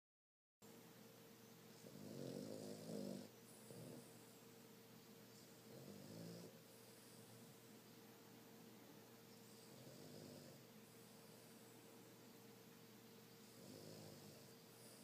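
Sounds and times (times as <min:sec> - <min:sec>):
dog snoring: 0:01.7 - 0:04.4, 0:05.3 - 0:07.6, 0:09.3 - 0:11.8, 0:13.4 - 0:15.0.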